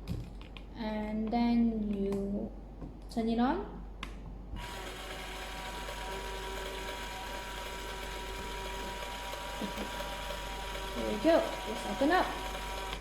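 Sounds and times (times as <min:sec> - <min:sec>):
electric motor whirring: 0:04.6 - 0:13.0
plastic gears whining: 0:04.6 - 0:13.0.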